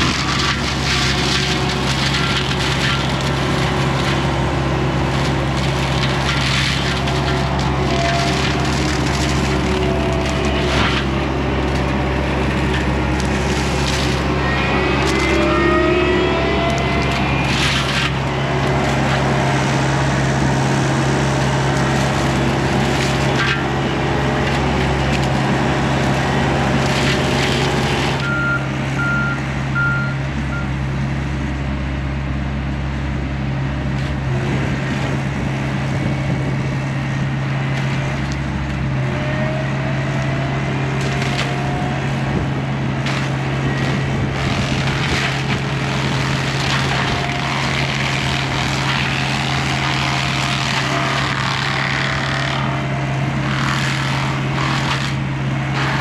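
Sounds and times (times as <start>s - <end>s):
diesel machine running: 0.0s - 56.0s
wood being shredded: 0.0s - 56.0s
short warning beeps: 28.2s - 30.7s.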